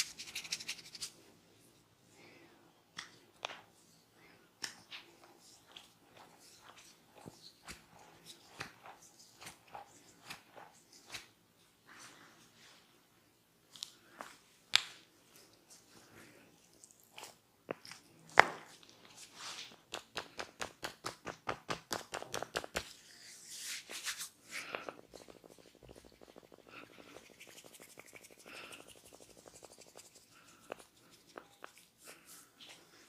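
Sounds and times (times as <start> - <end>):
hands slapping skin: 8.5 - 11.3, 19.7 - 23.0, 24.0 - 32.0
palms rubbing oily skin: 19.2 - 32.8.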